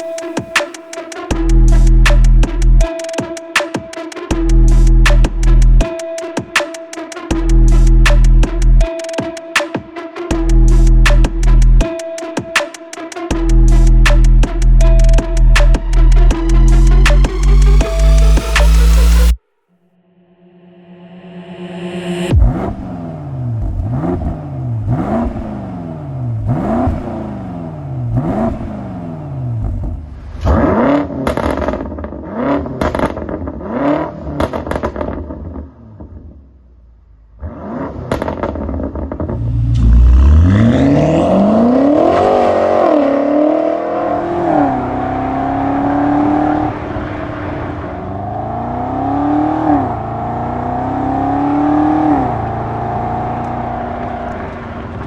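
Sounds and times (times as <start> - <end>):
car engine throttle blips: 22.3 - 32.1, 37.9 - 55.0
car accelerating through gears: 22.3 - 35.1, 37.4 - 55.0.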